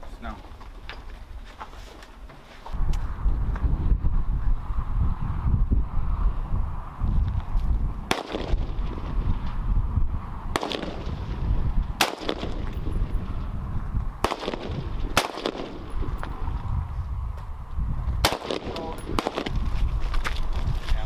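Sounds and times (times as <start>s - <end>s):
wind rumble on microphone: 2.6s - 21.0s
rifle shots: 8.1s - 9.2s, 10.5s - 11.4s, 12.0s - 13.0s, 14.2s - 16.2s, 18.2s - 19.6s.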